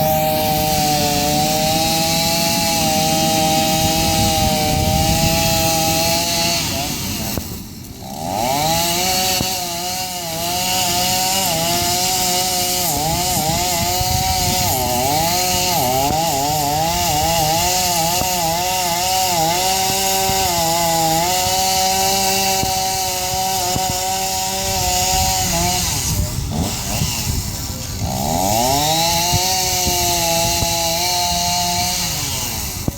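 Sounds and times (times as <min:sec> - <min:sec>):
chainsaw cutting wood: 0:00.0 - 0:32.9.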